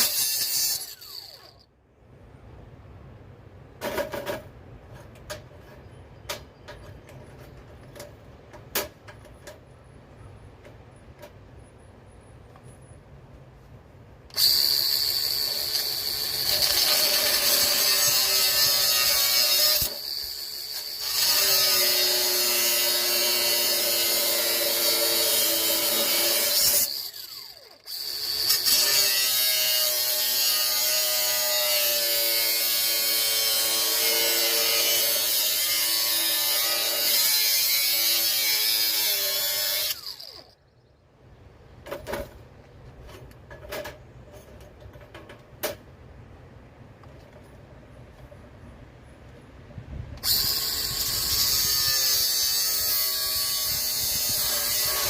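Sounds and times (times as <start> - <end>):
power tool grinding metal: 0.0 - 1.6, 14.3 - 40.5, 50.2 - 55.0.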